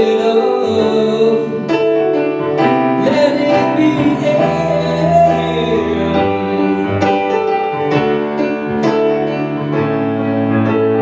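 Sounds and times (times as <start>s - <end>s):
person singing: 0.0s - 8.2s
keyboard chords: 0.0s - 11.0s.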